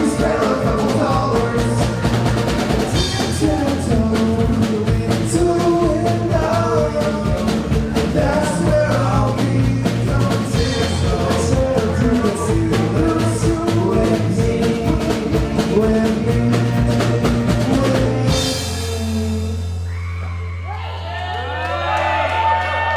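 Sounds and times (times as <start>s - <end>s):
rapid drum hits: 0.0s - 19.4s
rock band playing: 0.0s - 20.6s
sustained bass notes: 0.0s - 21.0s.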